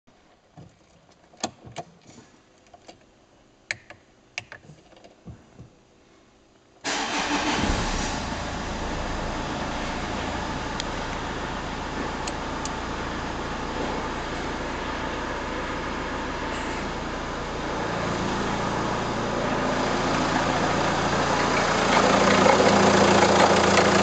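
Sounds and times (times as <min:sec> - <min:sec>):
diesel engine starting and idling: 0:06.8 - 0:24.0.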